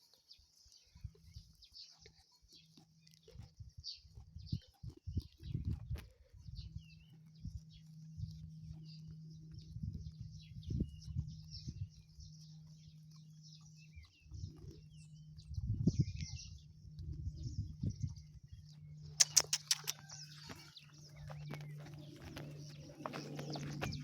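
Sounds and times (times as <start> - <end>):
small birds chirping: 0.0 - 24.0
steady low hum: 0.9 - 24.0
sheep thumps and rustles: 20.3 - 24.0.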